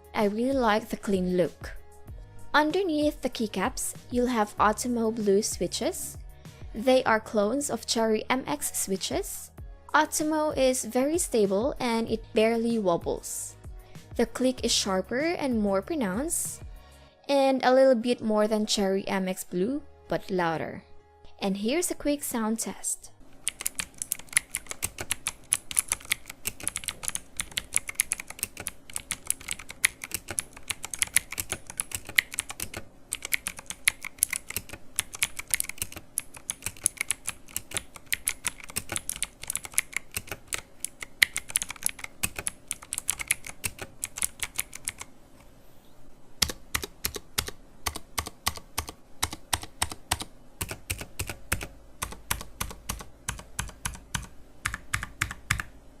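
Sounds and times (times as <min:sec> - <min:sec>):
clicky keyboard typing: 0:23.4 - 0:45.1, 0:46.4 - 0:55.7.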